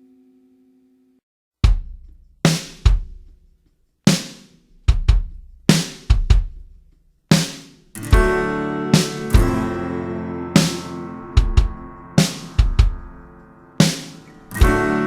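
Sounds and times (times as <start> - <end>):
drum kit hits with cymbal: 7.3 - 15.0.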